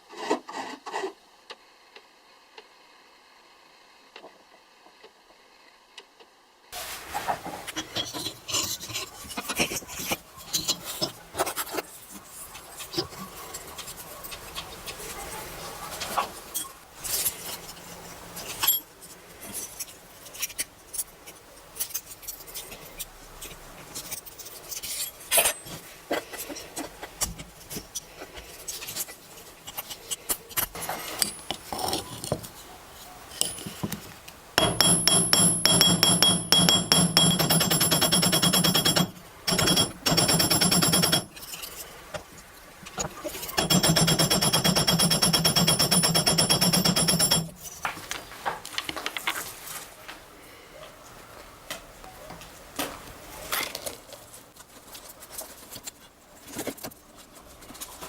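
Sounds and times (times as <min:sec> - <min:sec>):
metal tools clicking and scraping: 0:07.8 - 0:15.0, 0:16.5 - 0:32.6, 0:33.3 - 0:41.9, 0:43.0 - 0:47.8
loud fast rhythmic machine sound: 0:34.6 - 0:41.3, 0:43.6 - 0:47.5.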